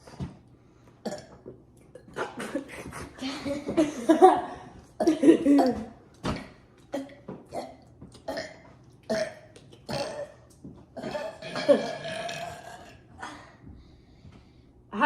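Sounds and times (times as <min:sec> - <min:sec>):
boy burping: 0:01.0 - 0:02.7, 0:05.0 - 0:06.0, 0:06.9 - 0:10.4, 0:11.0 - 0:13.1.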